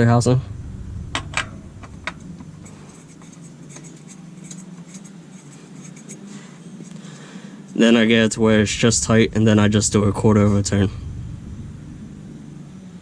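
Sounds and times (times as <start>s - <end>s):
oil filter scraping on threads: 1.1s - 9.4s.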